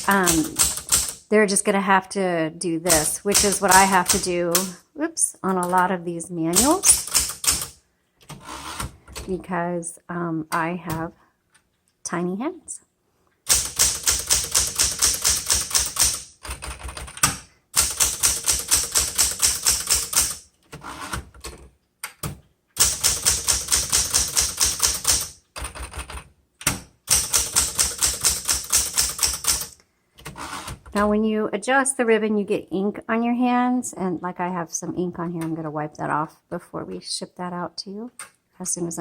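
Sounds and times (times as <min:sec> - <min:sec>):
manual typewriter key strikes: 0:00.0 - 0:01.2, 0:02.9 - 0:04.8, 0:06.5 - 0:07.8, 0:13.5 - 0:20.4, 0:22.0 - 0:26.0, 0:26.6 - 0:29.8.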